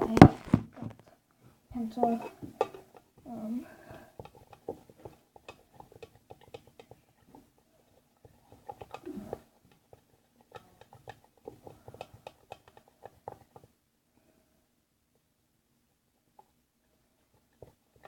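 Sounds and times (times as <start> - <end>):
pencil stirring soap in container: 1.8 - 13.8, 16.2 - 18.0
pencil tapping container sides: 2.0 - 13.8.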